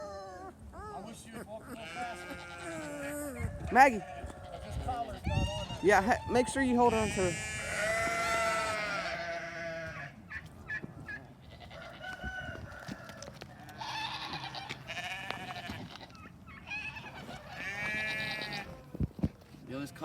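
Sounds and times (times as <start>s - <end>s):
farm animals bleating: 0.0s - 18.9s.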